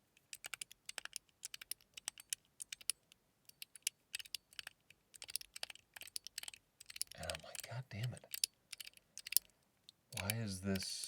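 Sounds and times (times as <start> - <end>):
fidget slider clicking: 8.3 - 9.5, 10.2 - 10.4.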